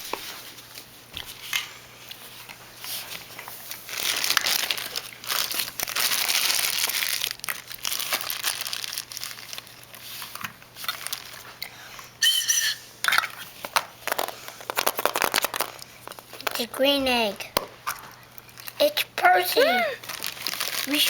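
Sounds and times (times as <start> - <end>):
wrapper crinkling: 2.4 - 11.6, 13.6 - 16.8, 18.0 - 18.8, 19.4 - 21.0.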